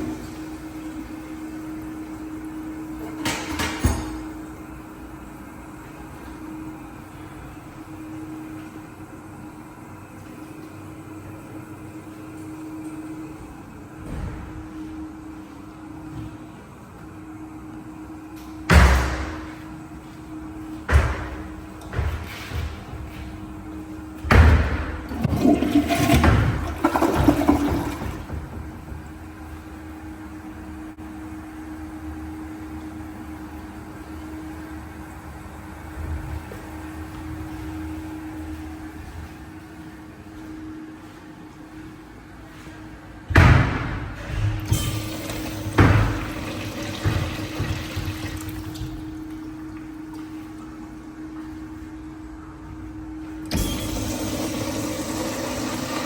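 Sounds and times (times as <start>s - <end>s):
steady low hum: 0.0s - 56.0s
toilet flushing: 24.3s - 30.2s, 44.6s - 50.6s, 53.5s - 56.0s.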